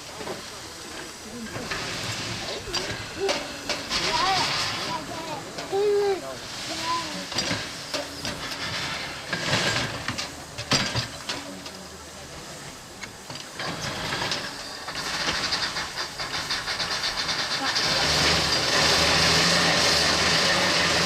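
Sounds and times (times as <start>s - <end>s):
steam exhaust chuffing: 0.0s - 21.0s
steam hiss: 0.0s - 21.0s
metal clanks and knocks: 7.3s - 11.8s.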